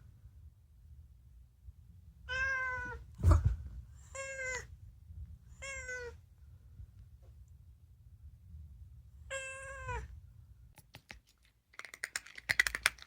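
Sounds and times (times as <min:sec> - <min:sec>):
cat meowing: 0:02.3 - 0:03.0, 0:04.1 - 0:04.7, 0:05.6 - 0:06.2, 0:09.3 - 0:10.1.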